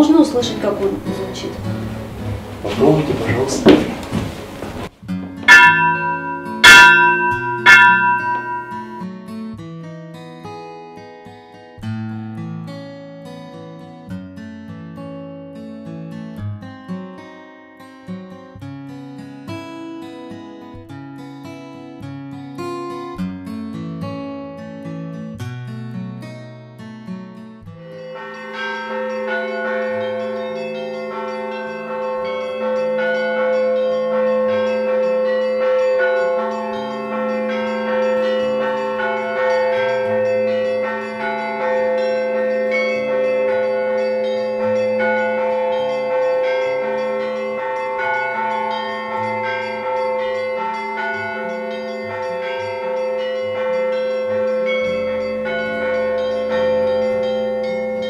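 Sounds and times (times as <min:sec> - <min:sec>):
large church bells ringing: 0:00.0 - 0:04.4, 0:05.4 - 0:09.2, 0:27.8 - 0:58.0
small church bells striking: 0:05.4 - 0:09.3, 0:27.8 - 0:58.0.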